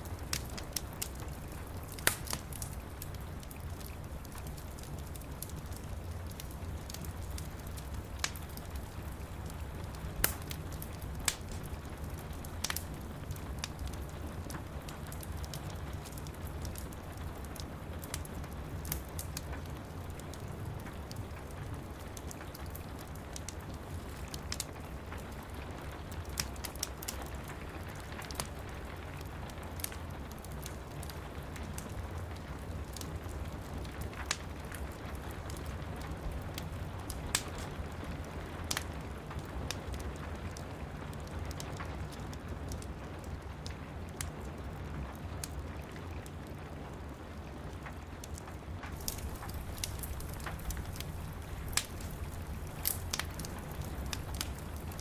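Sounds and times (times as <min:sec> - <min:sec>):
wood fire crackling and popping: 0:00.0 - 0:55.0
rain hissing: 0:48.9 - 0:55.0.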